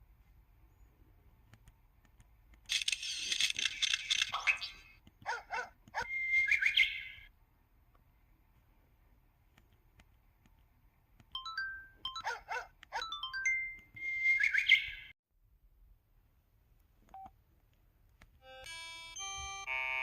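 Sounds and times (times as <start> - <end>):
stepped ringtone melody: 11.4 - 14.5, 18.4 - 20.0.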